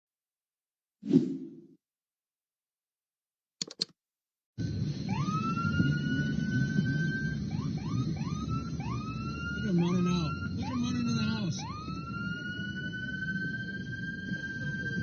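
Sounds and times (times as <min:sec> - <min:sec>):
short clicks: 0:03.6 - 0:04.0
siren wailing: 0:04.6 - 0:15.0.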